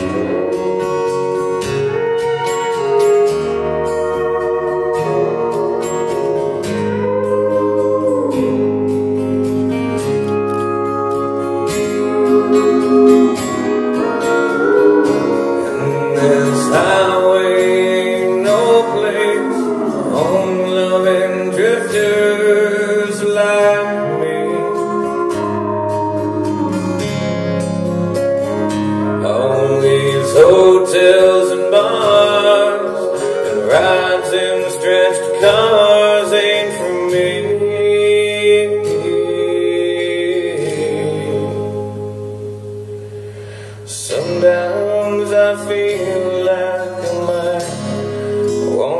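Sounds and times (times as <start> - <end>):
bass line: 0.0 - 22.4
sliding guitar notes: 0.0 - 48.9.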